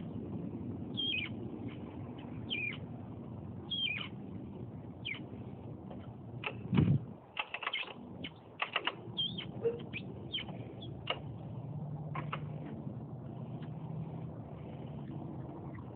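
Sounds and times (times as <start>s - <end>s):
low steady hum: 0.0s - 15.9s
suspension squeaking: 7.4s - 11.3s, 12.1s - 12.8s.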